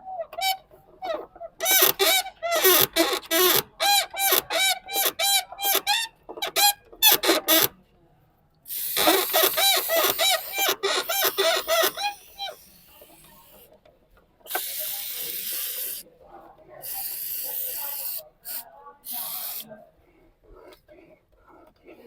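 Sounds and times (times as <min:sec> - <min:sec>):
car door squeaking: 0:01.6 - 0:07.8, 0:09.0 - 0:12.6.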